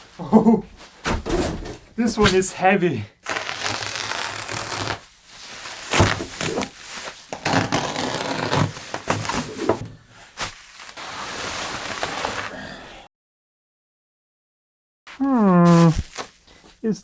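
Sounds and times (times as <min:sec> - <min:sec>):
rustling and scraping: 0:00.0 - 0:02.5, 0:03.7 - 0:12.5, 0:15.1 - 0:16.8.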